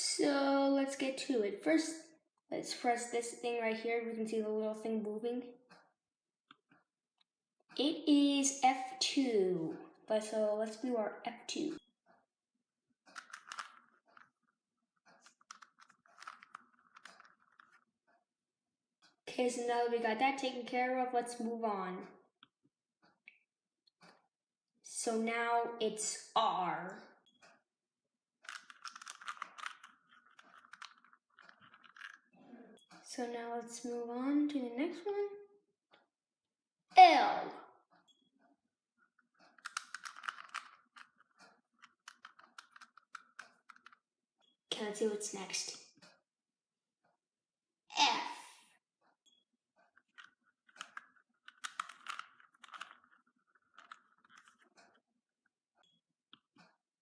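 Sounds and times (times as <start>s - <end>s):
plastic cube twisting clicks: 13.2s - 14.3s, 15.2s - 17.8s, 28.5s - 32.2s, 39.6s - 44.0s, 50.1s - 54.6s.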